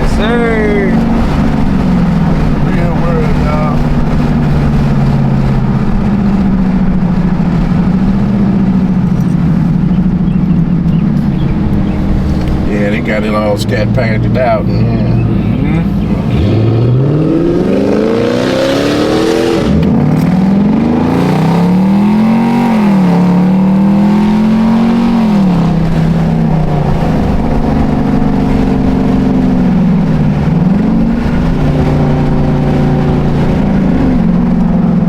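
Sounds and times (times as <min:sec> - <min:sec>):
car engine revving: 0:00.0 - 0:35.0.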